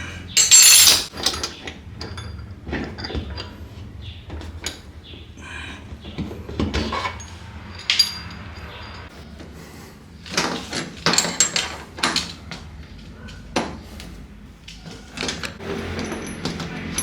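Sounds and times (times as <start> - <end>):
wrench clinking on metal bolts: 0.4 - 3.6, 6.7 - 9.1, 10.4 - 12.4, 15.2 - 17.0
metal clattering: 0.4 - 3.7, 6.0 - 9.1, 14.9 - 17.0.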